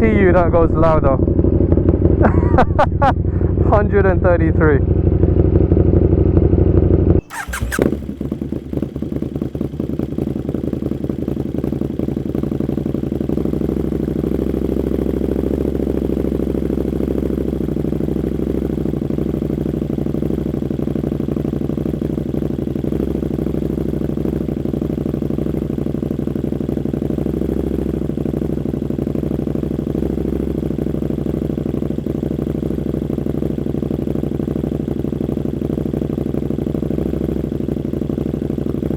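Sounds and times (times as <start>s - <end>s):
motorcycle engine revving and idling: 0.0s - 38.9s.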